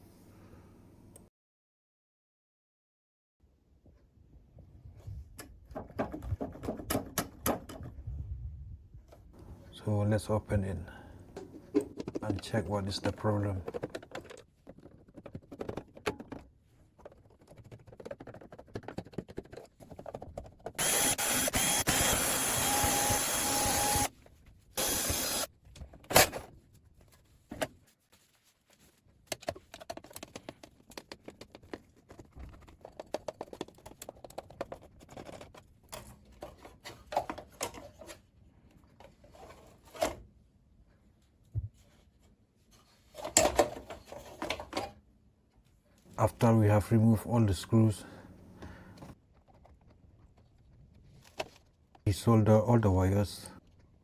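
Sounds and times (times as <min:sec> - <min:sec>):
power screwdriver running: 0:20.8 - 0:24.1, 0:24.8 - 0:25.5
screws and plastic casing clicking: 0:29.3 - 0:36.6.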